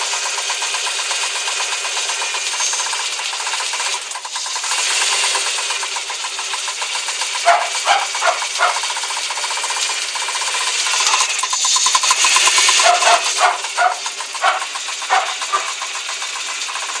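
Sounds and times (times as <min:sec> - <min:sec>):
car engine with ticking lifters: 0:00.0 - 0:17.0
hiss: 0:04.4 - 0:05.8, 0:10.5 - 0:17.0.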